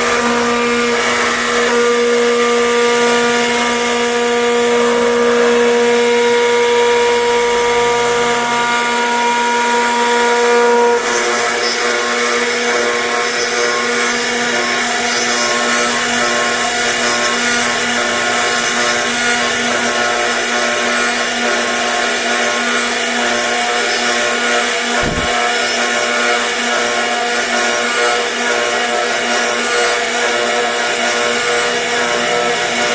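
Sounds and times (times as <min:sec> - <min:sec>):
router spindle whining: 0:00.0 - 0:32.9.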